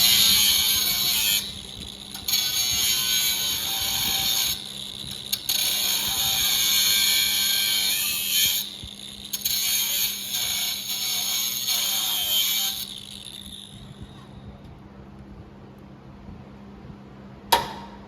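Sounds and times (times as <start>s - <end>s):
cut-off disc grinding sheet metal: 0.0s - 14.4s.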